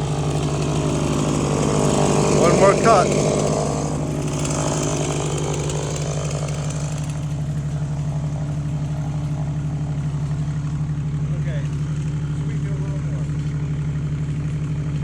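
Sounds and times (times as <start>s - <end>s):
engine idling: 0.0s - 15.0s.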